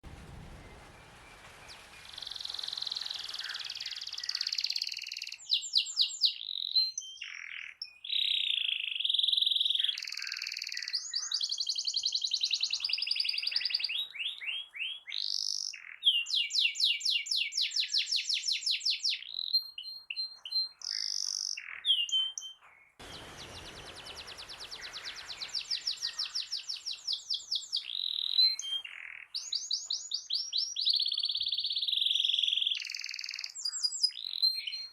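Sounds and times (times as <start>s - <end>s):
canary singing trills: 1.3s - 34.9s.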